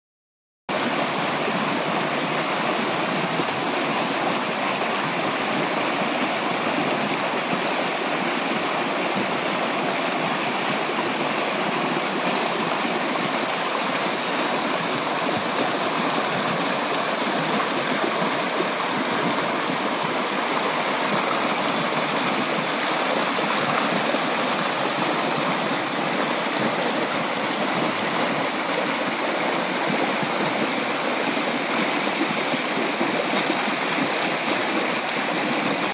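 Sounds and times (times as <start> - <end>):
creek rushing over rocks: 0.7 - 35.9.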